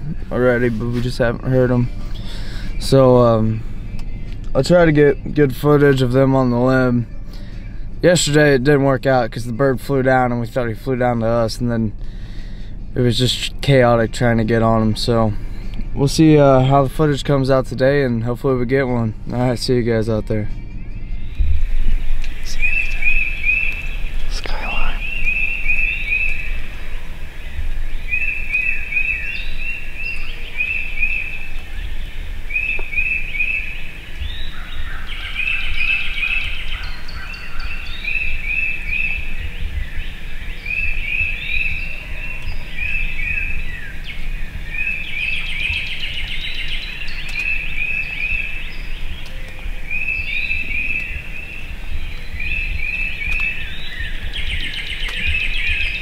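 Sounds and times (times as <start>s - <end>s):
other bird calls: 0.0s - 5.2s, 19.9s - 56.0s
steady low rumble: 0.0s - 56.0s.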